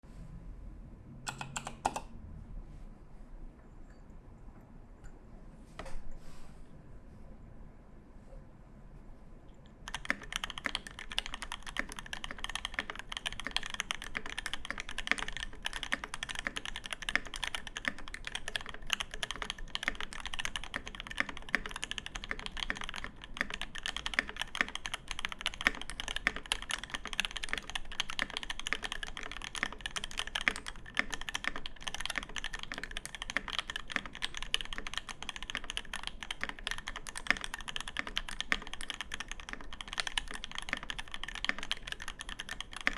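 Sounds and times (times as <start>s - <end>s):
mechanical keyboard typing: 1.3s - 2.1s, 9.8s - 42.9s.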